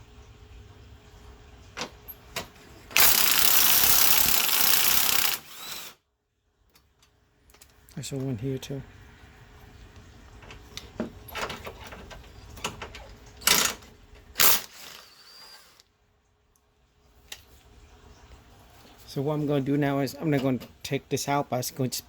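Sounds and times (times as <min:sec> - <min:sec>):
loud mechanical bursts: 0:03.0 - 0:06.0, 0:14.4 - 0:15.8.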